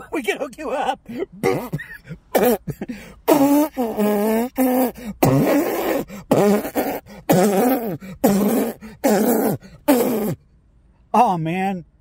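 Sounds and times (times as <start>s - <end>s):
man imitating popping exhaust: 1.2s - 10.4s.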